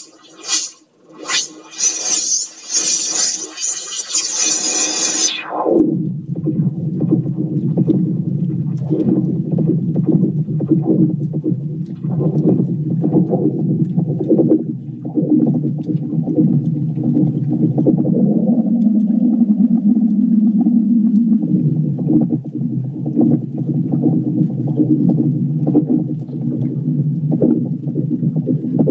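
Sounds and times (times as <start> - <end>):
deeper drone tone: 15.0 - 23.6.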